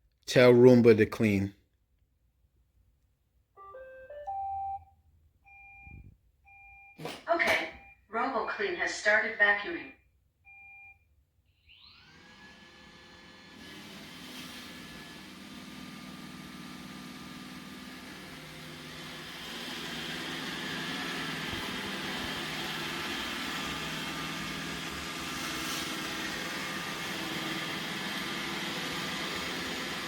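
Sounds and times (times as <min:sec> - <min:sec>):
robot vacuum running: 0:11.6 - 0:30.0.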